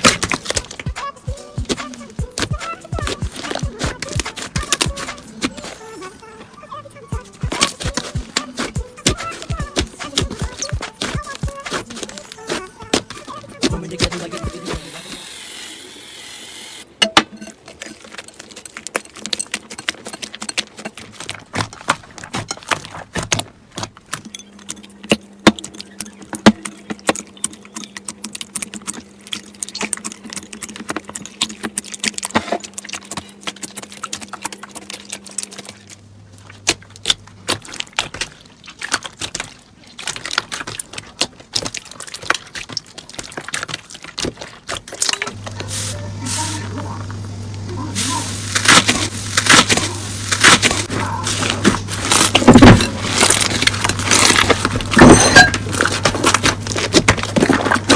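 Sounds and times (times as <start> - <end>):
slime crackling and popping: 48.4 - 57.9.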